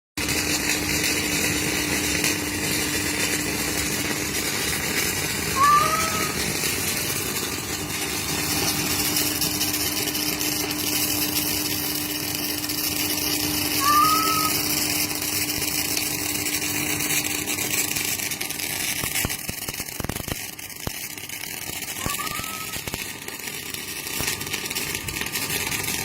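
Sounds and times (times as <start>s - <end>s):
welding arc crackling hiss: 0.2s - 26.0s
short high-pitched call: 5.5s - 6.5s, 13.7s - 14.8s.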